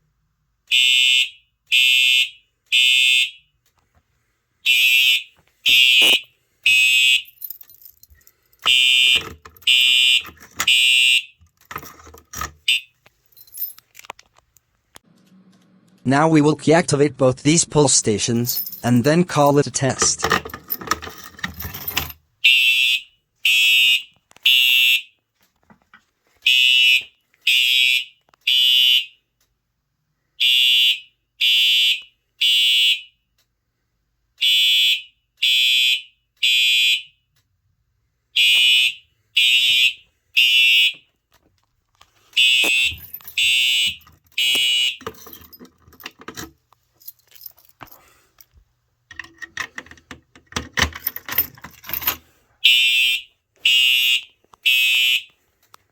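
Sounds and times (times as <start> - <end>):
fire alarm horn blasts: 0.7 - 3.6, 4.6 - 7.3, 8.7 - 11.4, 12.7 - 12.9, 22.4 - 25.2, 26.4 - 29.3, 30.4 - 33.3, 34.4 - 37.3, 38.3 - 41.1, 42.4 - 45.0, 52.6 - 55.3.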